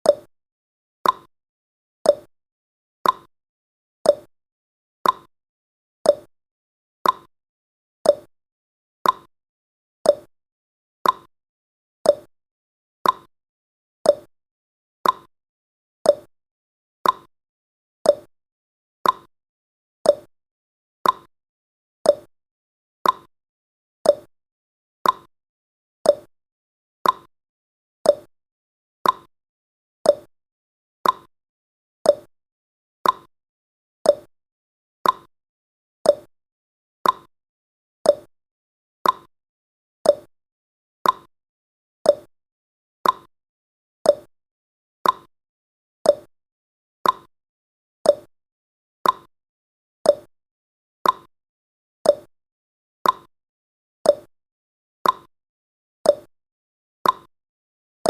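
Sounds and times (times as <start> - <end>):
clock ticking: 31.0 - 31.3, 37.0 - 37.3, 39.0 - 39.3, 43.0 - 43.3, 47.0 - 47.3, 55.0 - 55.3.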